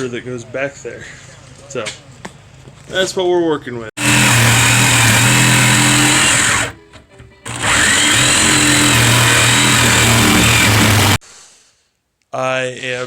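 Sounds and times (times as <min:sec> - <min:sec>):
electric power tool running: 0:04.0 - 0:06.8, 0:07.5 - 0:11.2.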